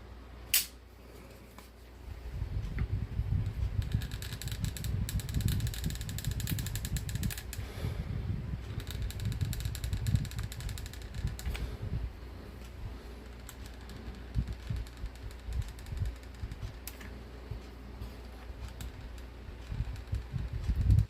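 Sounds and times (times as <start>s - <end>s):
low hum: 0.0s - 21.0s
sharp clicks: 0.5s - 0.8s.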